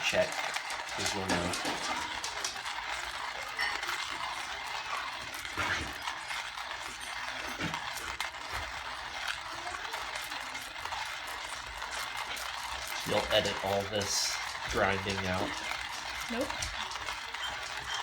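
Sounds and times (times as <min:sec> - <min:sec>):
hand coffee grinder grinding beans: 0:00.0 - 0:18.0.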